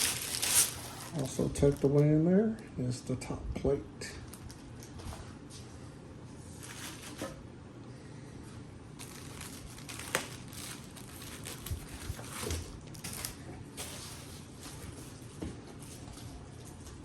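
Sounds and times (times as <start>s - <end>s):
packing material crinkling: 0.0s - 2.2s, 6.6s - 7.4s, 9.0s - 16.1s.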